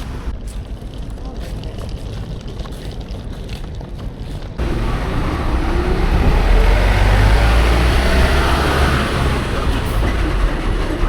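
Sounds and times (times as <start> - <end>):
wind: 0.0 - 11.0
low rumble: 4.6 - 11.0
water noise: 4.6 - 11.0.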